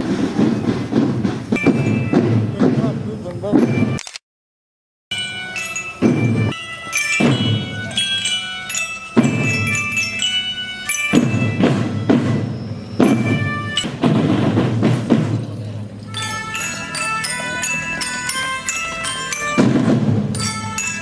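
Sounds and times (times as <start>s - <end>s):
drum hits: 0.0s - 4.0s, 5.4s - 17.4s, 19.5s - 21.0s
ringing bell-like notes: 1.5s - 2.8s, 5.1s - 14.0s, 16.0s - 21.0s.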